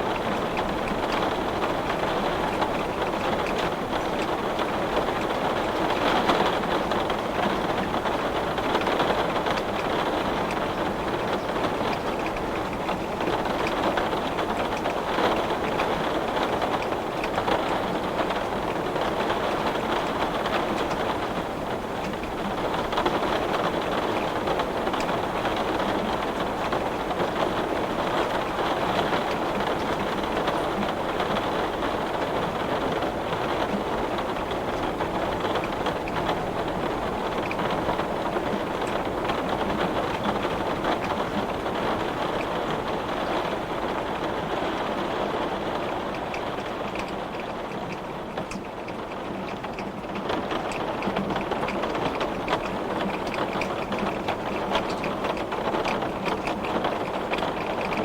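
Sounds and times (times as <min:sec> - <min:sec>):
heavy rain on glass: 0:00.0 - 0:58.0.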